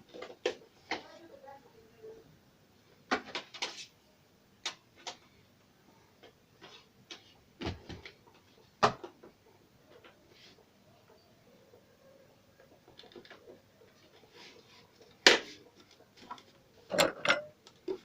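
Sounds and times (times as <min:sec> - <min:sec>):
clicks and knocks of tools: 0:16.2 - 0:18.0.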